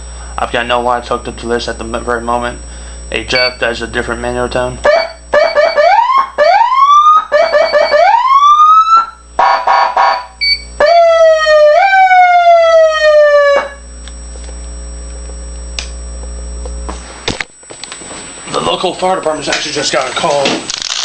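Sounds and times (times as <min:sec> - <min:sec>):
steady hum: 0:00.0 - 0:21.0
harsh siren buzzing blast: 0:00.6 - 0:21.0
electronic siren wailing: 0:01.5 - 0:15.1.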